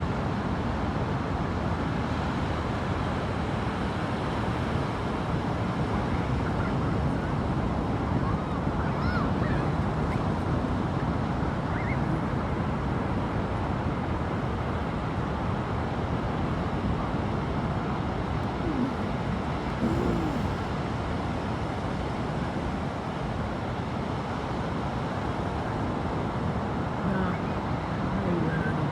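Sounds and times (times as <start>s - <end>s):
faint bird calls: 11.7s - 12.4s, 18.5s - 20.7s.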